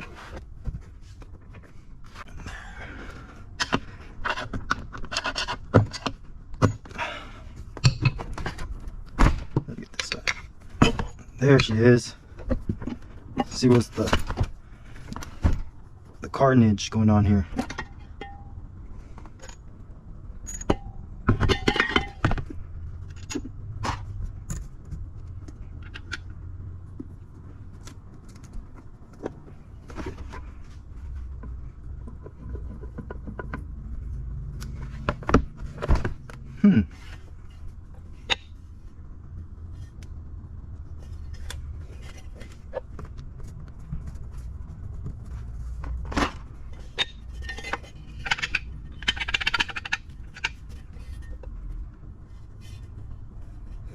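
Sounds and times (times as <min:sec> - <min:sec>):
low steady hum: 0:00.0 - 0:53.9
metal tools clinking and knocking: 0:17.6 - 0:18.6, 0:19.2 - 0:19.7, 0:20.4 - 0:23.5, 0:46.2 - 0:51.5.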